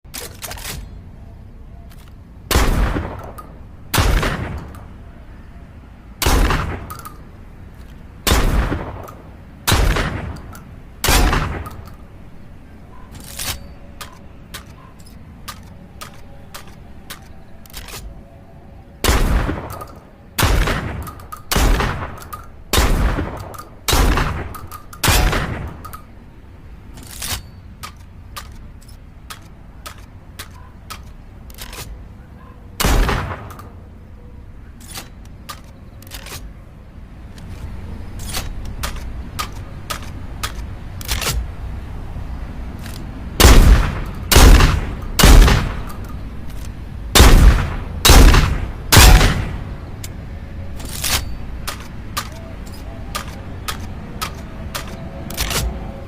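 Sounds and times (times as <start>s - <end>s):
shotgun shots: 6.2s - 7.0s, 19.0s - 25.8s, 32.8s - 33.7s, 43.4s - 45.9s, 47.2s - 49.7s
mechanical clicks and clacks: 49.9s - 56.0s.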